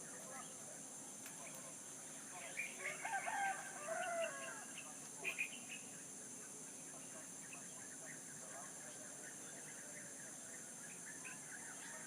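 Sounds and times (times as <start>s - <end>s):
rooster crowing: 2.8s - 4.7s.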